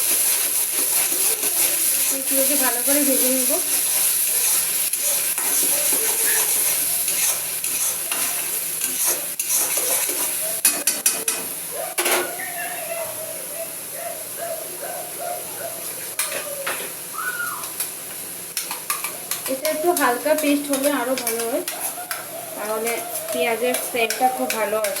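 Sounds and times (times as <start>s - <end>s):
paste sizzling in hot oil: 0.0s - 11.2s, 18.5s - 25.0s
spatula scraping and knocking pan: 0.0s - 12.3s, 18.6s - 25.0s.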